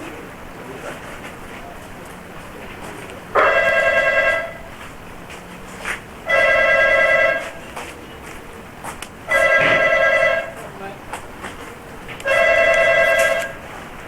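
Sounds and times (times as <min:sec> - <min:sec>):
telephone ringing: 0:03.4 - 0:04.7, 0:06.3 - 0:07.7, 0:09.3 - 0:10.6, 0:12.2 - 0:13.8.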